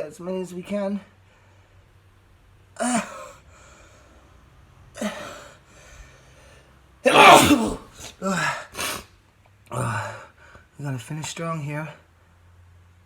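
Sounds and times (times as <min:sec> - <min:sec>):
man sneezing: 0:07.1 - 0:09.1.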